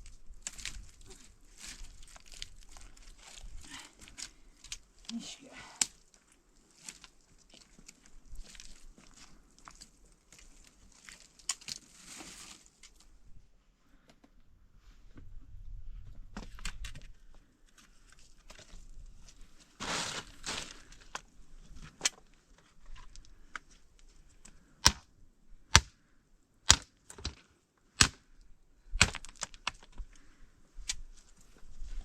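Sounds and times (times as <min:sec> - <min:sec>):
firewood rustling and crunching: 0:00.0 - 0:13.2, 0:16.4 - 0:24.7, 0:28.8 - 0:32.0
sharp wooden cracks: 0:24.8 - 0:25.1, 0:25.7 - 0:26.0, 0:26.6 - 0:28.3, 0:29.0 - 0:30.0.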